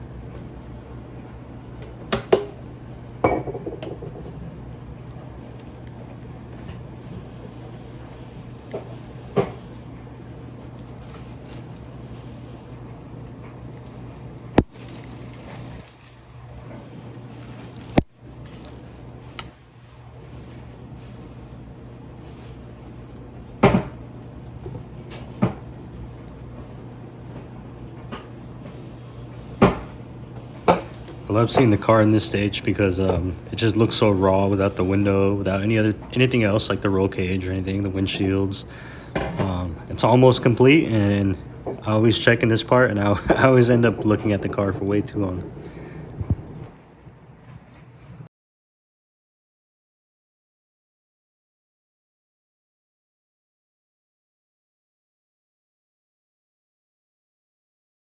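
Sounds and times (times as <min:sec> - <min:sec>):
steady low hum: 0:00.0 - 0:48.3.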